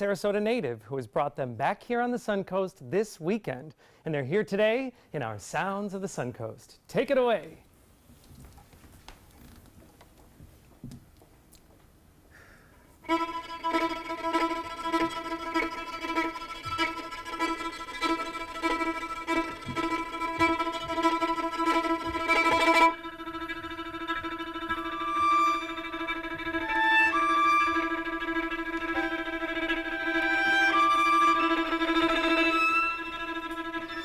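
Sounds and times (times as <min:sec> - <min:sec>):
string ensemble playing: 0:13.0 - 0:34.0.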